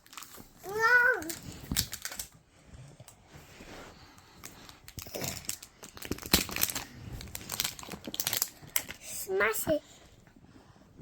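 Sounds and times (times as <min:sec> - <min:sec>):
wrapper crinkling and tearing: 0:00.0 - 0:02.4, 0:04.4 - 0:09.2.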